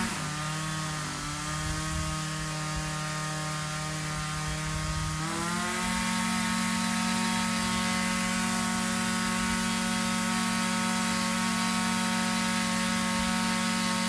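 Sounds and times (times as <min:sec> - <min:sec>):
two-stroke engine running: 0:00.0 - 0:14.0.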